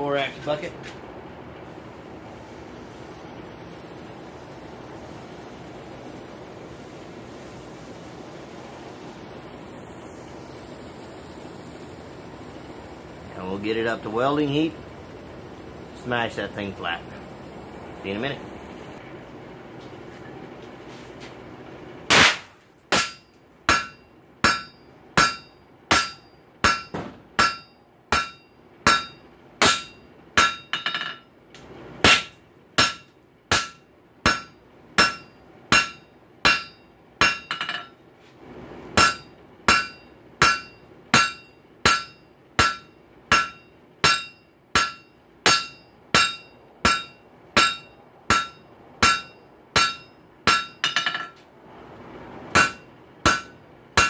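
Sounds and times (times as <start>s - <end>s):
hammer striking metal on anvil: 22.1s - 31.3s, 32.0s - 38.0s, 39.0s - 51.4s, 52.5s - 54.0s.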